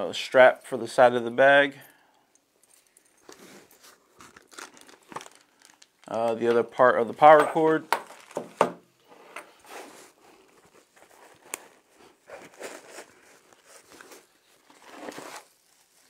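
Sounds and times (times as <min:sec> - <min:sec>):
packaging crinkling: 0:03.2 - 0:06.9, 0:07.9 - 0:08.6, 0:10.2 - 0:16.0.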